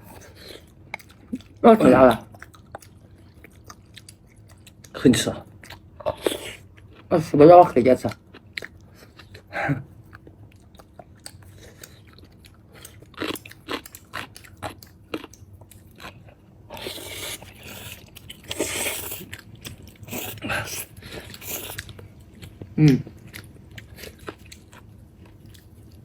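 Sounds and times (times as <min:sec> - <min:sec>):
biting and chewing: 0:10.1 - 0:26.0.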